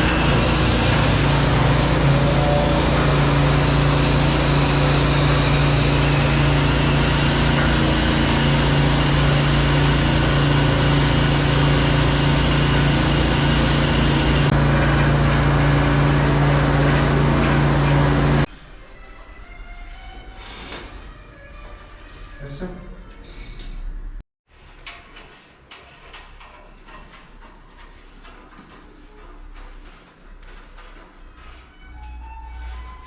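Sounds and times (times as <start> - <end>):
drain-jetting machine humming: 0.0 - 18.5.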